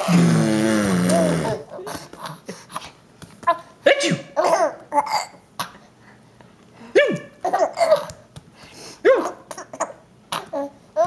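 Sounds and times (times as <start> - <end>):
baby laughing: 1.0 - 2.9, 4.3 - 5.4, 7.4 - 8.2.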